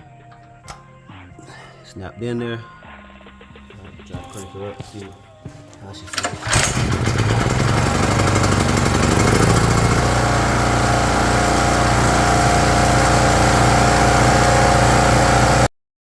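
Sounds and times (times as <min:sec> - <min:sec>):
generator engine running: 0:05.7 - 0:15.7.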